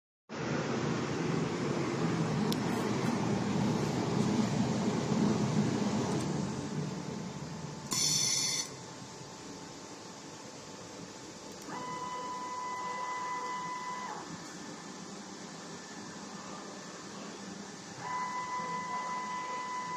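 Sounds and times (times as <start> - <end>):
steady hum-like whine: 0.3 - 19.9
shrill high whine: 0.4 - 9.8, 11.6 - 14.4, 17.9 - 19.9
machine motors whirring: 11.6 - 14.4, 18.0 - 19.9.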